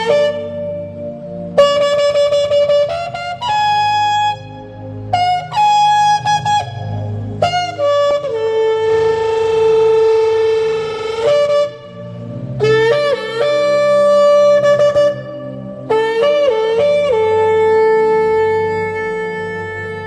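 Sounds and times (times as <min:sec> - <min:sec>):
shofar blasts: 0:05.1 - 0:20.0.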